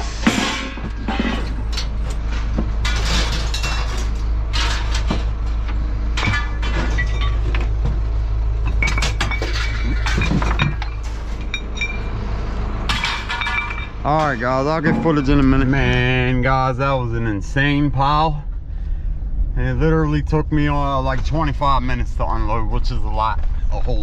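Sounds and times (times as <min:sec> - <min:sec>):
glass and metal crashing: 0:00.0 - 0:02.1, 0:02.8 - 0:05.4, 0:06.1 - 0:07.7, 0:08.6 - 0:12.2, 0:12.9 - 0:16.5
steady low rumble: 0:00.0 - 0:24.0.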